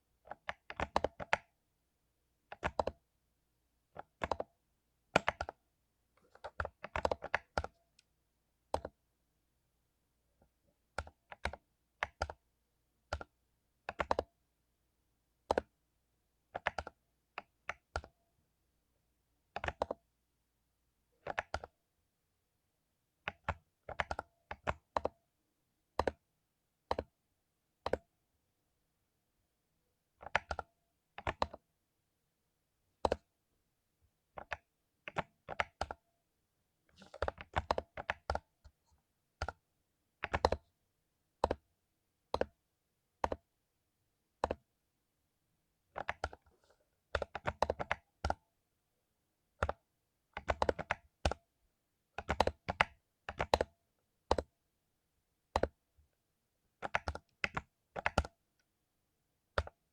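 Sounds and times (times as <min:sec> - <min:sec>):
mechanical keyboard typing: 0:00.3 - 0:01.5, 0:02.5 - 0:03.0, 0:04.0 - 0:04.5, 0:05.2 - 0:05.6, 0:06.3 - 0:07.8, 0:08.7 - 0:09.0, 0:11.0 - 0:12.4, 0:13.1 - 0:14.3, 0:15.4 - 0:15.7, 0:16.6 - 0:18.1, 0:19.6 - 0:20.0, 0:21.2 - 0:21.8, 0:23.3 - 0:25.2, 0:26.0 - 0:26.2, 0:26.9 - 0:27.1, 0:30.2 - 0:30.6, 0:31.2 - 0:31.6, 0:33.0 - 0:33.3, 0:34.4 - 0:36.0, 0:37.0 - 0:38.7, 0:39.4 - 0:39.6, 0:40.2 - 0:40.7, 0:41.4 - 0:41.6, 0:42.3 - 0:42.5, 0:44.4 - 0:44.6, 0:46.0 - 0:46.5, 0:47.1 - 0:48.4, 0:49.6 - 0:51.4, 0:52.2 - 0:53.7, 0:54.3 - 0:54.5, 0:55.5 - 0:55.8, 0:56.8 - 0:58.4, 0:59.6 - 0:59.9.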